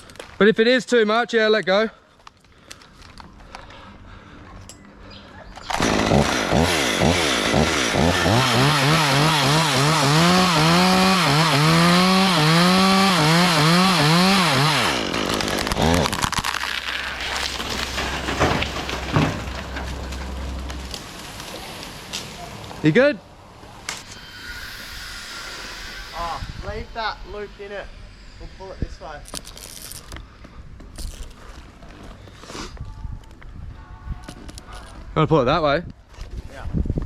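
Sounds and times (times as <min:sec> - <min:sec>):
chainsaw cutting into tree: 0:05.7 - 0:18.9
wood knocks and cracks: 0:15.3 - 0:22.3.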